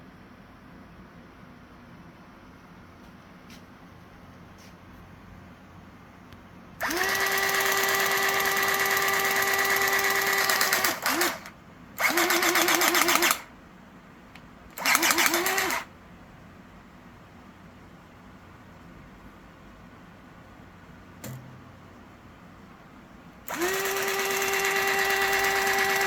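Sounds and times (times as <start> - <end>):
electric motor whining: 6.8 - 13.4, 23.5 - 26.0.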